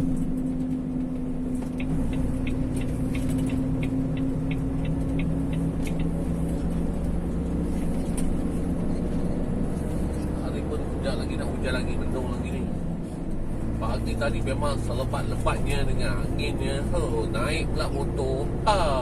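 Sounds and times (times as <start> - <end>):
lorry engine running: 0.0 - 19.0
sharp regular ticks: 1.6 - 6.5.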